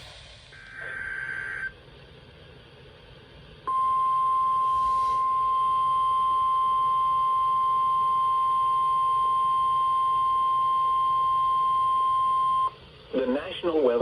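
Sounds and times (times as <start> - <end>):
steady alarm tone: 0.0 - 1.8, 3.7 - 7.8.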